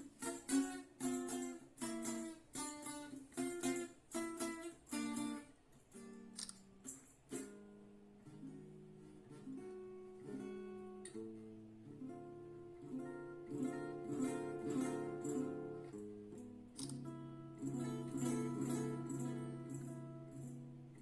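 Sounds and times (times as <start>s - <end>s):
acoustic guitar playing: 0.0s - 21.0s.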